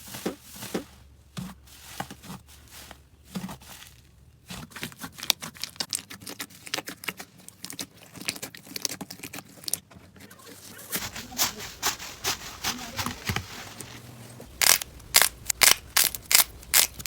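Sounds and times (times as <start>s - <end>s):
slime squishing and popping: 14.5s - 17.0s.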